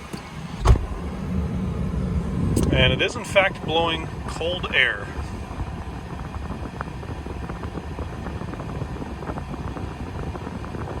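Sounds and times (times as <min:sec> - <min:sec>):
air conditioning blowing: 0:00.0 - 0:11.0
car engine idling: 0:00.0 - 0:11.0.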